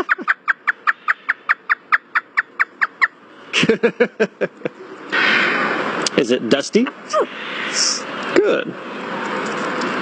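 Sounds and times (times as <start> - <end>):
parrot imitating laughter: 0.0 - 3.0.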